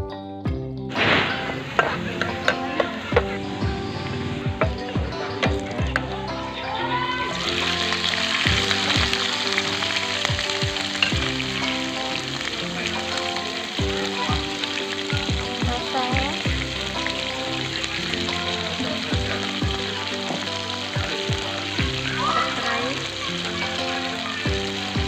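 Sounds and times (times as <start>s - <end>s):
background music with beat: 0.0s - 25.0s
food sizzling in oil: 6.9s - 25.0s.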